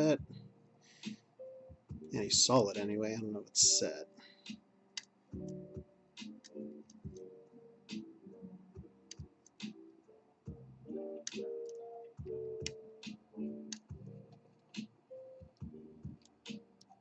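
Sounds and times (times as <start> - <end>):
soft background music: 0.0 - 17.0.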